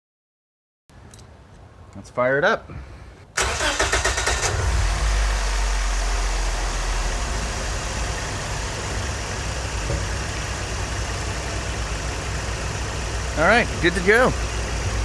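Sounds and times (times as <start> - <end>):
engine cranking: 3.4 - 5.3
car engine idling: 3.4 - 15.0.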